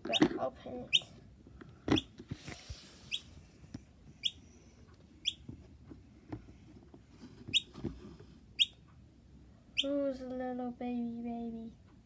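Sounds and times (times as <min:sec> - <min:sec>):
baby bird chirping: 0:00.0 - 0:01.1, 0:01.9 - 0:02.2, 0:03.0 - 0:03.4, 0:04.2 - 0:04.5, 0:05.2 - 0:05.4, 0:07.5 - 0:07.8, 0:08.6 - 0:08.8, 0:09.8 - 0:10.0.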